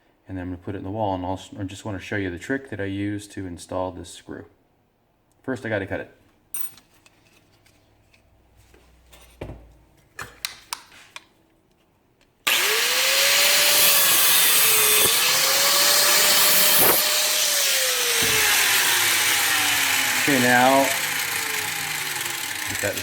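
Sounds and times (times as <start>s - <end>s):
power cutting tool cutting screw: 12.4s - 23.0s.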